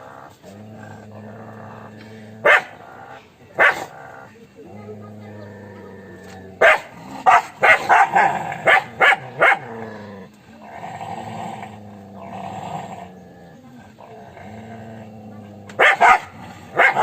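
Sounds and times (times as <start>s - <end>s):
dog growling: 0.0s - 17.0s
dog barking: 2.4s - 2.8s, 3.6s - 4.0s, 6.6s - 9.7s, 15.8s - 17.0s.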